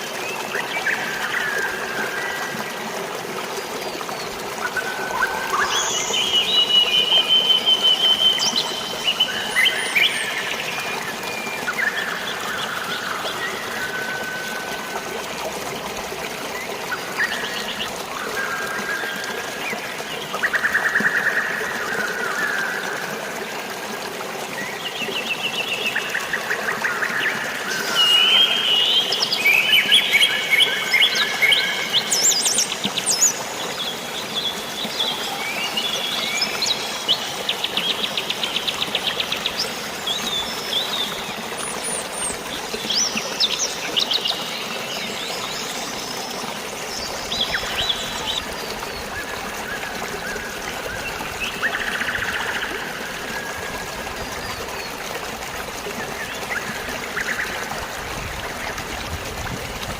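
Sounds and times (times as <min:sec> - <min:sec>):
trickling flowing water: 0:00.0 - 0:59.9.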